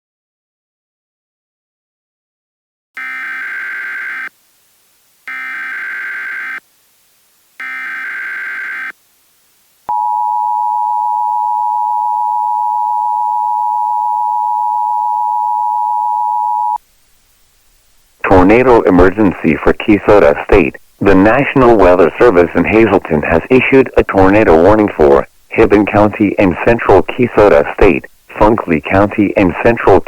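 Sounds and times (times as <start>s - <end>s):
screeching digital data bursts: 3.0s - 4.3s, 5.3s - 6.6s, 7.6s - 8.9s
harsh two-tone attention signal: 9.9s - 16.8s.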